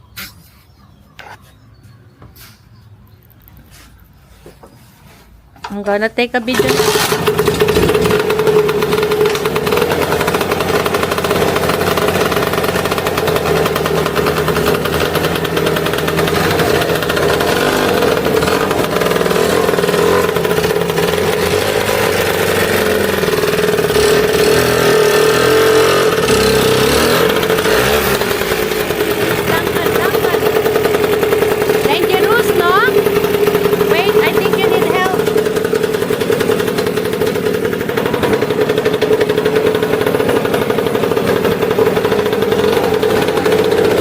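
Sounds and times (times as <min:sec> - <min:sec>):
scooter two-stroke engine running: 0:05.6 - 0:44.0.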